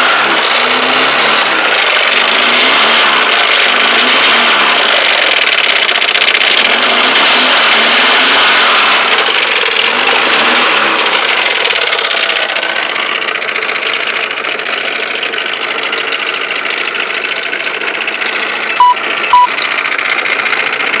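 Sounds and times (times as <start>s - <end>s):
car engine idling: 0.0s - 21.0s
engine knocking: 0.0s - 21.0s
high-pitched beeps: 18.8s - 19.5s.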